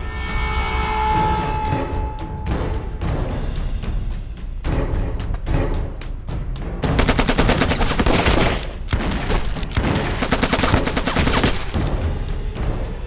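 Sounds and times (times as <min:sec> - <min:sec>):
dramatic soundtrack music: 0:00.0 - 0:13.0
rapid gunfire: 0:06.8 - 0:12.2.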